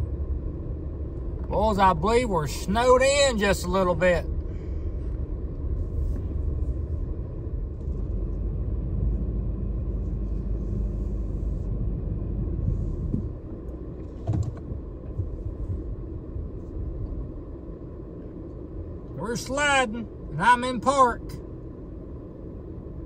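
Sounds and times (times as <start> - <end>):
vehicle engine rumble: 0.0 - 23.0.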